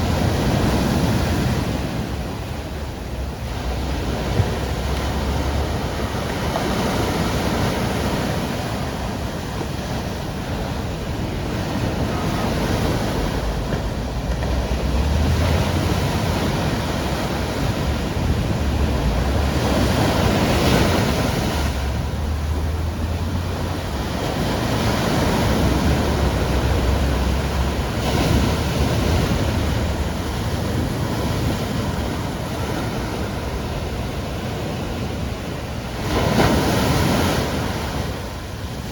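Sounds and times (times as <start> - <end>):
waves breaking on shore: 0.0 - 38.9
wind rumble on microphone: 0.0 - 38.9.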